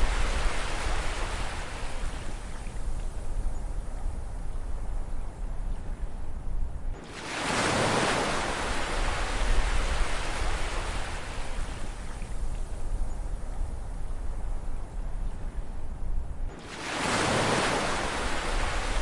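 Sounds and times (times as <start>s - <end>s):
wave breaking: 16.6s - 19.0s.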